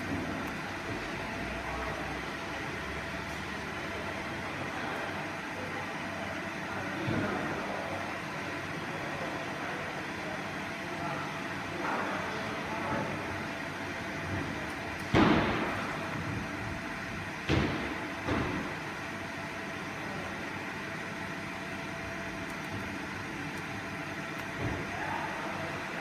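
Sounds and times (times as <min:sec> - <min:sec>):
machine hum: 0:11.1 - 0:26.0.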